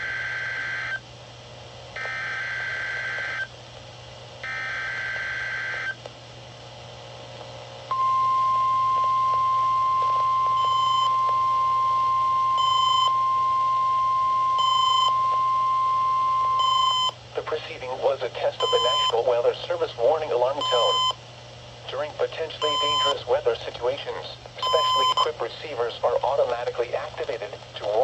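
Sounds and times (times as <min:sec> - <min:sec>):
steady warning alarm tone: 0:00.0 - 0:01.0, 0:02.0 - 0:03.5, 0:04.4 - 0:06.0, 0:07.9 - 0:17.2, 0:18.6 - 0:19.3, 0:20.5 - 0:21.2, 0:22.6 - 0:23.3, 0:24.6 - 0:25.4
short high beeps: 0:24.6 - 0:25.3.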